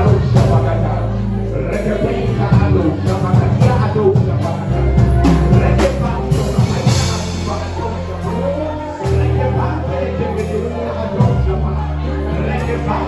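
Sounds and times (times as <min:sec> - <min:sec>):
drums: 0:00.0 - 0:00.9, 0:01.8 - 0:10.6, 0:11.2 - 0:11.6
sustained bass notes: 0:00.0 - 0:13.0
voices singing along: 0:00.0 - 0:13.0
worship band music: 0:00.0 - 0:13.0.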